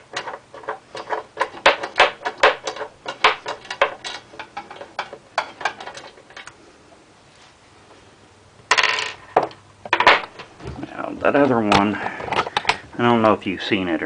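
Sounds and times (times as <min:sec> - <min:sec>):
metal clatter: 0:00.0 - 0:06.5.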